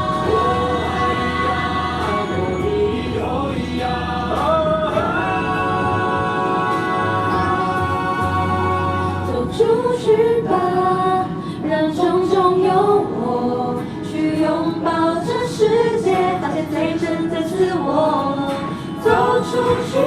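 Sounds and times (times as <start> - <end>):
voices singing a song: 0.0 - 20.0.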